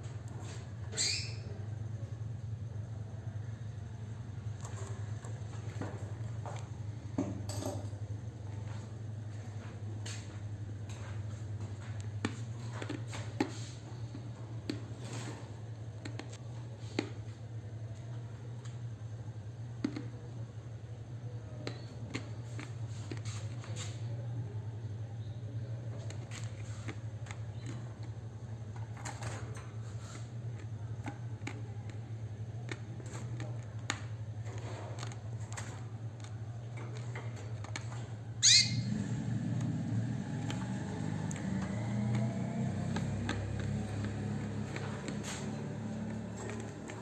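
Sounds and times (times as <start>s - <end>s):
steady low hum: 0.0s - 47.0s
cage birds chirping: 0.9s - 1.6s, 36.4s - 46.8s.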